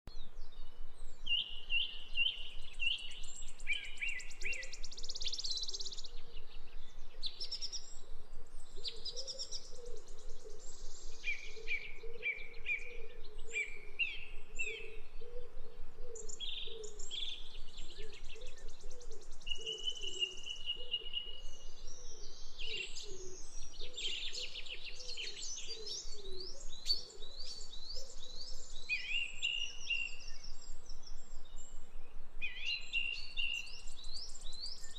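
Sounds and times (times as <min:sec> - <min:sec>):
small birds chirping: 0:00.1 - 0:34.9
lower wavering bird calls: 0:00.6 - 0:34.9.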